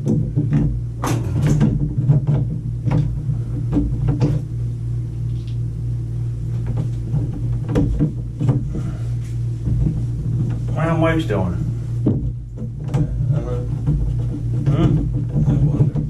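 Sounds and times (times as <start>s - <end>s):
sharp knocks and clatter: 0.0s - 4.5s, 6.6s - 9.0s, 9.6s - 11.3s, 12.0s - 16.0s
steady low hum: 0.0s - 16.0s.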